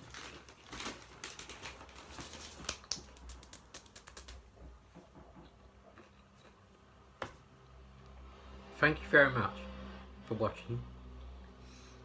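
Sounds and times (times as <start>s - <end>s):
crisp packet crinkling: 0.0s - 4.4s.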